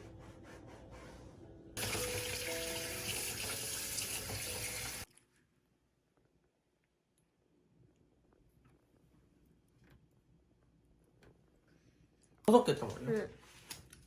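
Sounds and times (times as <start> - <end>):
running water hiss: 1.8 - 5.1.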